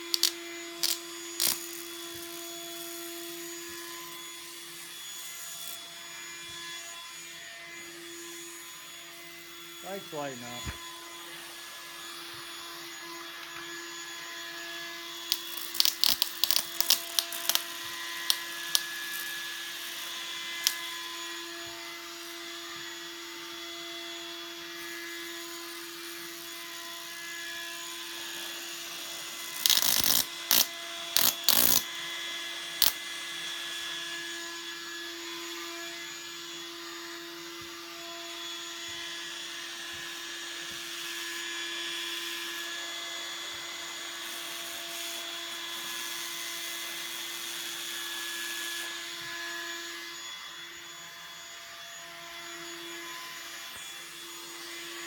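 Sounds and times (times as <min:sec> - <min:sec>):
tesla coil electrical buzz: 0:00.0 - 0:03.0, 0:15.2 - 0:20.9
sharp cracking snaps of arcing: 0:00.1 - 0:01.7.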